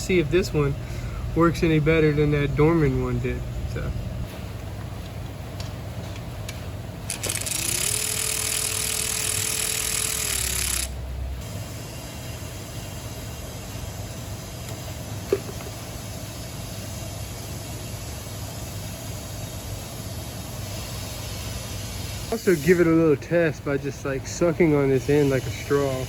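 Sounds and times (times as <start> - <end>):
air hissing and whistling: 16.0 - 23.1, 24.3 - 26.0.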